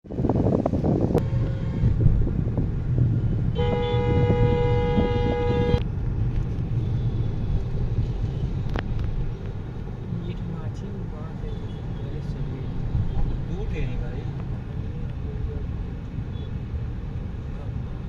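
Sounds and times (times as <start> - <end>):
traffic rumbling on a bridge: 0.1 - 18.0
vehicle horn blast: 1.2 - 2.0, 3.5 - 5.8.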